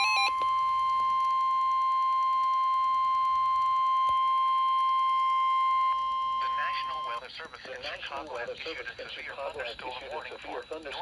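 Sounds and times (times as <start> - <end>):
alternating alert beeps: 0.0 - 0.3
steady warning alarm tone: 0.0 - 11.0.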